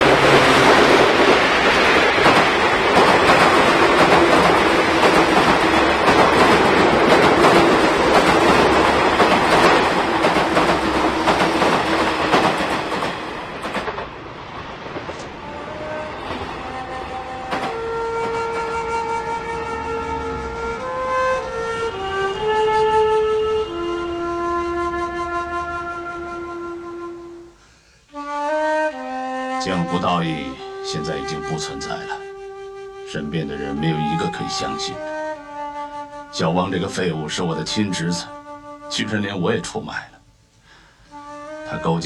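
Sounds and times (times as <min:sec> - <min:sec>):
held music notes: 0:00.0 - 0:13.9, 0:14.8 - 0:42.0
train wheels clattering over rail joints: 0:00.0 - 0:18.8.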